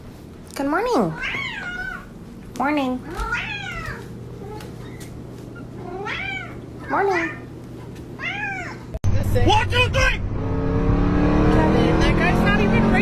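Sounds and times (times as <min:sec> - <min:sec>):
cat meowing: 0:01.1 - 0:02.1, 0:03.0 - 0:05.0, 0:05.7 - 0:07.5, 0:08.2 - 0:09.0.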